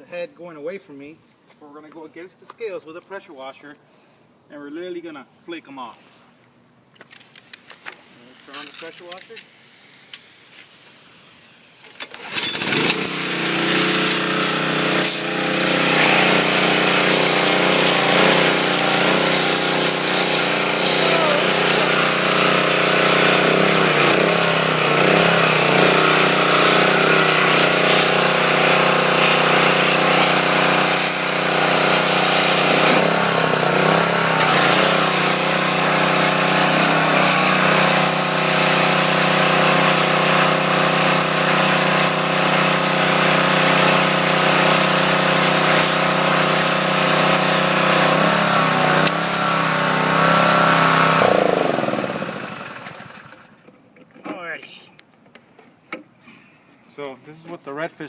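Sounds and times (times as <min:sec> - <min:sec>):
pressure washer spraying water: 0:07.4 - 0:53.4.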